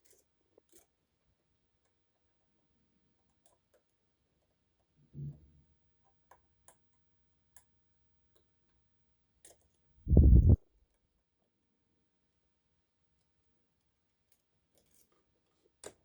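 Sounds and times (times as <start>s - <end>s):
dull low thud: 10.1s - 10.6s
louder low thump: 10.1s - 10.6s.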